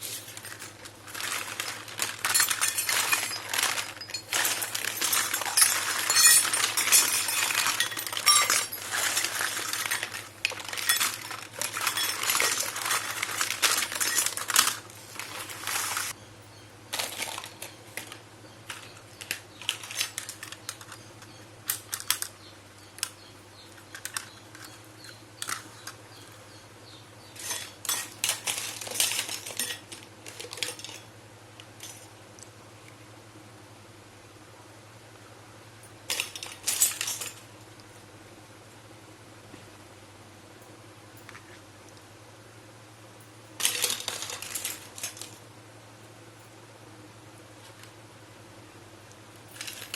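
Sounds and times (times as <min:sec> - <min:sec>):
toy kitchen pieces clinking: 0:00.3 - 0:16.2, 0:16.9 - 0:22.4, 0:23.8 - 0:26.0, 0:27.3 - 0:31.1, 0:36.1 - 0:37.4, 0:43.6 - 0:45.4, 0:49.5 - 0:49.9.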